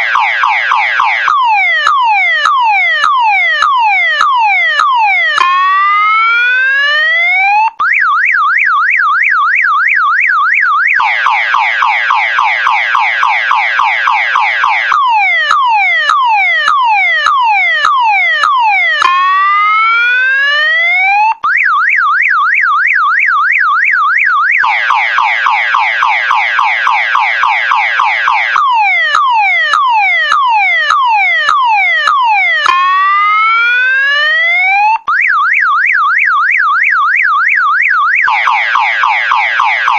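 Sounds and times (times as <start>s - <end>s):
car alarm siren: 0.0s - 39.9s.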